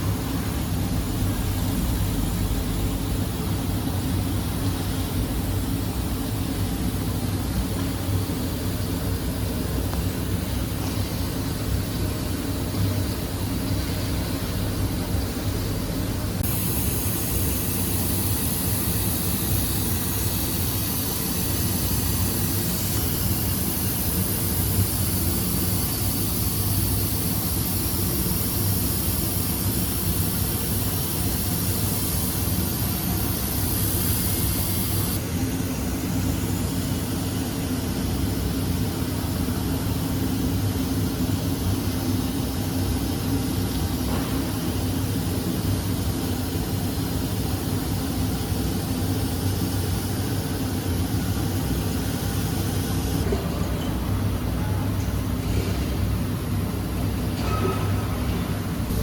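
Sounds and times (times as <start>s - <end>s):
machine droning: 0.0s - 38.8s
high hiss: 16.4s - 35.2s.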